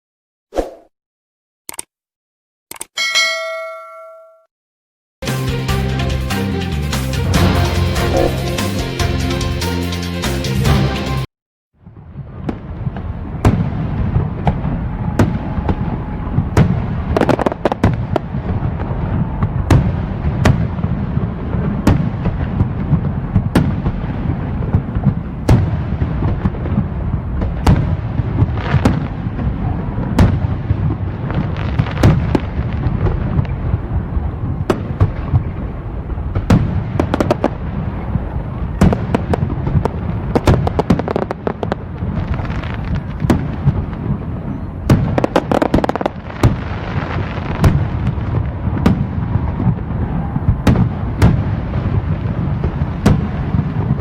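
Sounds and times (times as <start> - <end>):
fireworks rumbling bursts: 11.8 - 54.0
firework sharp cracks: 16.5 - 29.5, 30.1 - 33.5, 36.3 - 38.1, 38.7 - 44.1, 44.8 - 54.0.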